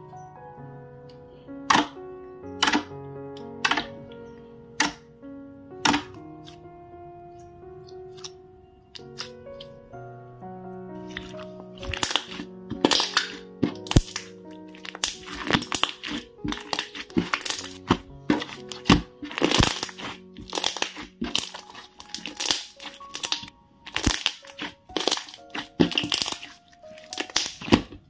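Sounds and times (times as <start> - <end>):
background music: 0.0 - 28.0
slime popping and clicking: 9.0 - 9.3, 11.1 - 28.0.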